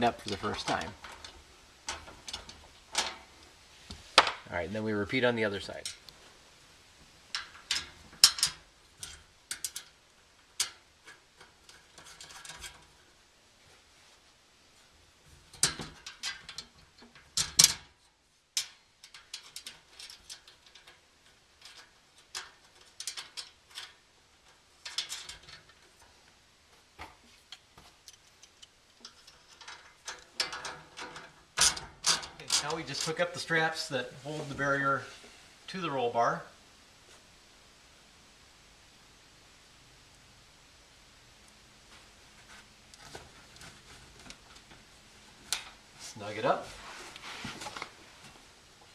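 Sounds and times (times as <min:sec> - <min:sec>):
metallic clicks and clinks of bolts: 0:07.3 - 0:10.0, 0:15.5 - 0:17.9, 0:18.6 - 0:24.0, 0:24.8 - 0:25.8, 0:27.5 - 0:33.2.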